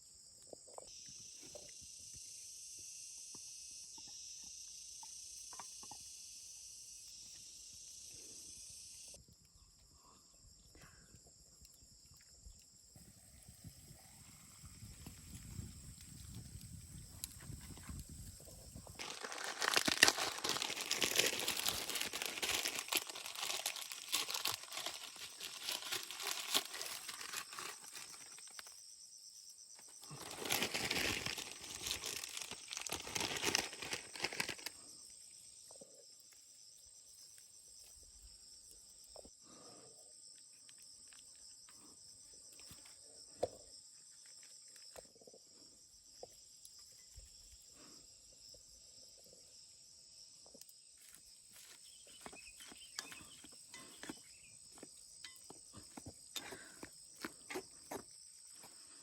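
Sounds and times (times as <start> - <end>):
insects chirring: 0.0 - 59.0
dry corn leaves rustling: 18.6 - 28.8, 30.0 - 34.9, 51.0 - 54.2.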